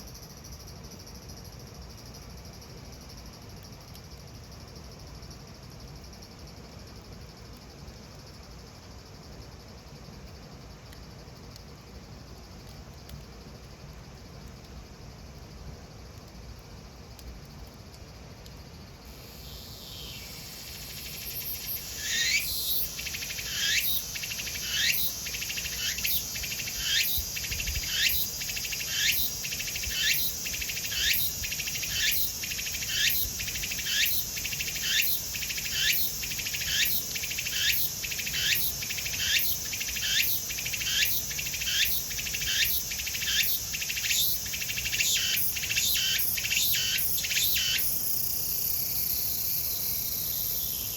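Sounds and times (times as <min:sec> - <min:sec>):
cicada buzz: 0:19.0 - 0:50.9
cicada calls rising in pitch: 0:19.0 - 0:50.9.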